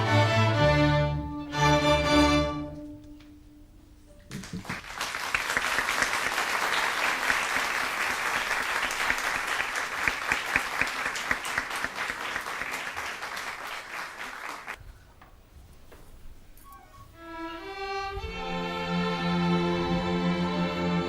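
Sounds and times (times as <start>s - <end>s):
audience applauding: 4.3s - 14.8s.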